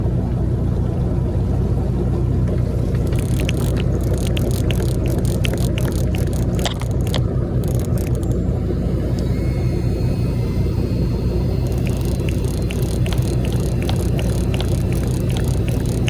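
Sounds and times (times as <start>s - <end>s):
boat engine rumbling: 0.0s - 16.0s
short clicks: 2.9s - 16.0s.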